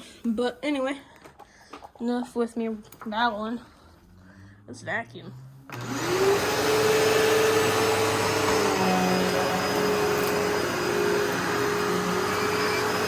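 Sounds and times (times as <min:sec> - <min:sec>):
vacuum cleaner motor whine: 0:05.7 - 0:13.0.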